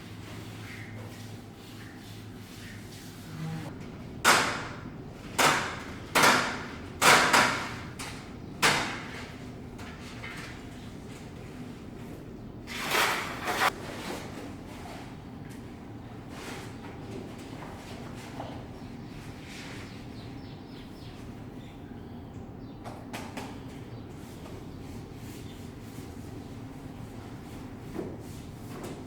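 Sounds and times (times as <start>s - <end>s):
wallpaper swishing strokes: 0.0s - 3.7s.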